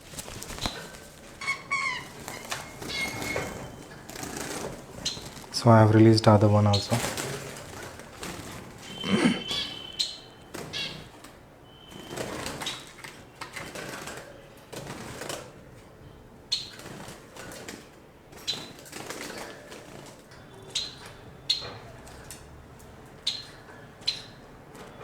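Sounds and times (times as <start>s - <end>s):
cockatiels chirping: 0.5s - 5.4s, 8.9s - 11.1s, 20.6s - 21.8s.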